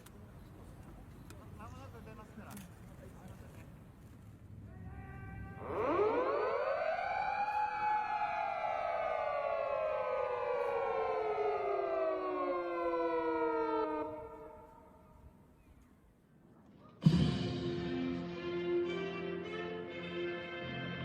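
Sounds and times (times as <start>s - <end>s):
police sirens wailing: 5.2s - 15.0s.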